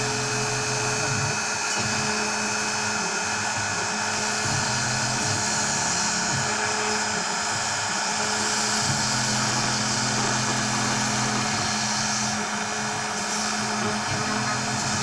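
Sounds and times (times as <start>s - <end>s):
spindle motor whine: 0.0s - 15.0s
stepper motor tones: 0.0s - 15.0s.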